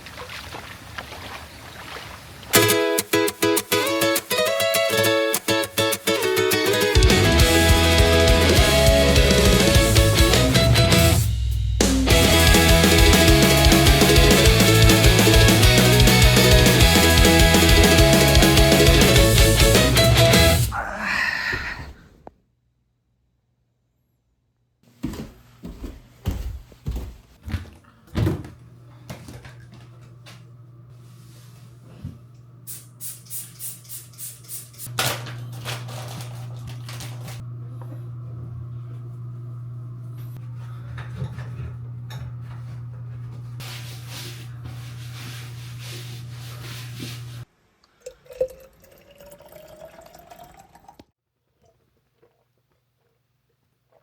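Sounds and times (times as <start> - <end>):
liquid pouring into container: 47.9 - 53.2.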